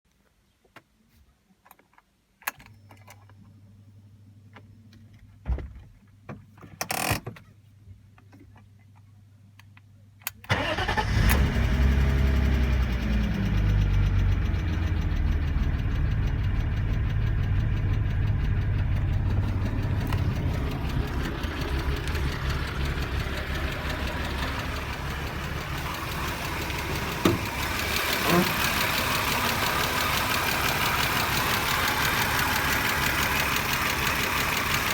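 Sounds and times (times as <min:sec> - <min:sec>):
ignition clicks: 0:10.2 - 0:11.8, 0:18.8 - 0:34.9
car engine cranking and idling: 0:10.5 - 0:34.9
engine knock: 0:12.6 - 0:34.9.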